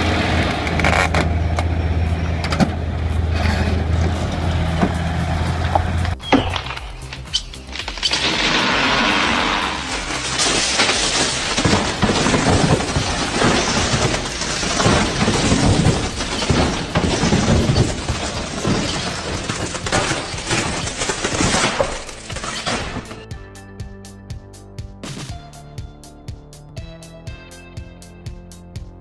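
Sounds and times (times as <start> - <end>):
wood crashing and cracking: 6.1 - 23.2.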